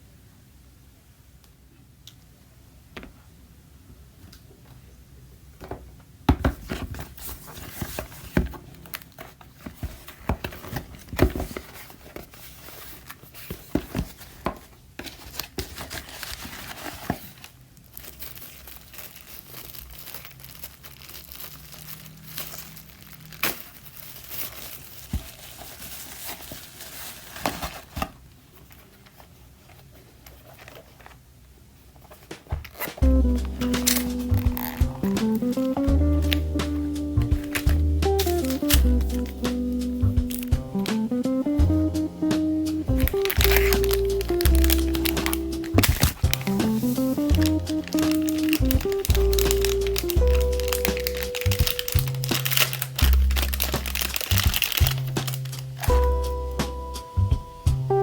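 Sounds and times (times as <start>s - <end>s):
packaging crinkling and rustling: 6.4s - 58.0s
sharp clicks and taps: 33.0s - 56.7s.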